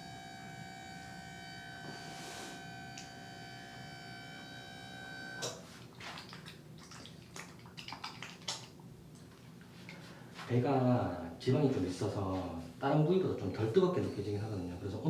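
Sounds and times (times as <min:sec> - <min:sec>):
steady high electronic tone: 0:00.0 - 0:05.4.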